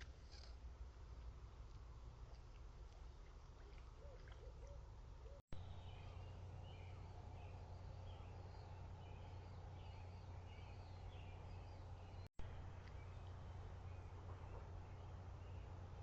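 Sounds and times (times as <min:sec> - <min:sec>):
low hum and hiss: 0:00.0 - 0:16.0
low hoot-like calls: 0:04.0 - 0:05.4.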